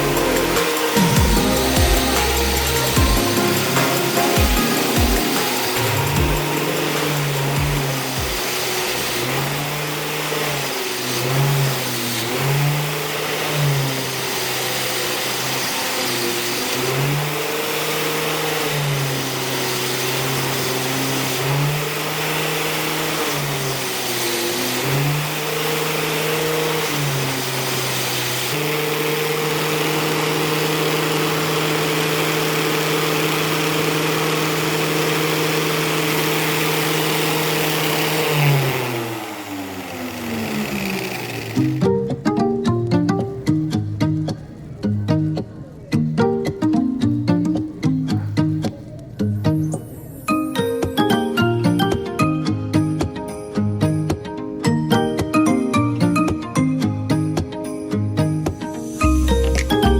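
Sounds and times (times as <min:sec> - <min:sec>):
power tool motor running: 0:00.0 - 0:42.0.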